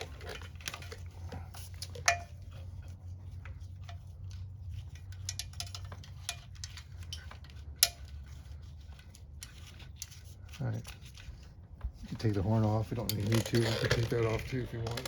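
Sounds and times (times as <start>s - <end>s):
metal parts clicking: 3.9s - 11.3s.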